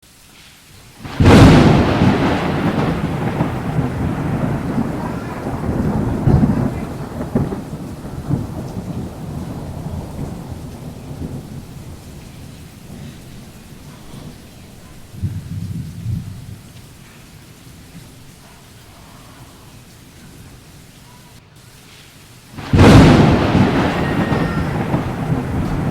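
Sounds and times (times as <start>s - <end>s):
rain falling: 0.0s - 25.9s
thunder rumbling: 1.0s - 18.0s, 22.6s - 25.9s.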